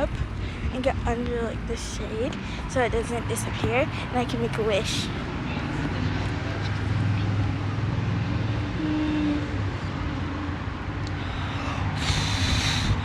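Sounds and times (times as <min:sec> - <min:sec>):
traffic on wet road: 0:00.1 - 0:13.0
hissing rush of passing car: 0:11.0 - 0:13.0.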